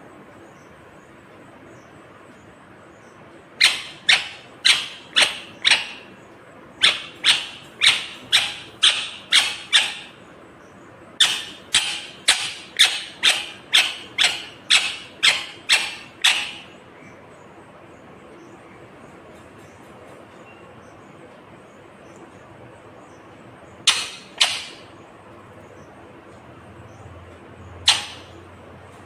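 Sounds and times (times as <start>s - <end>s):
parakeet sharp repeated calls: 3.6s - 17.1s, 23.8s - 25.0s, 27.7s - 28.5s.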